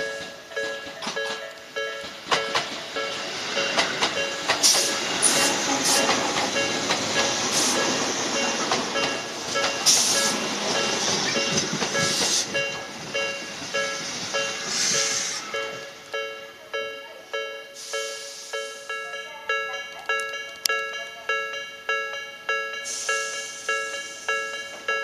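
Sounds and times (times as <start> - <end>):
electronic level-crossing alarm: 0.0 - 25.0
train rumble: 0.0 - 25.0
high hiss bursts: 9.8 - 11.1, 13.4 - 15.9, 17.8 - 18.9.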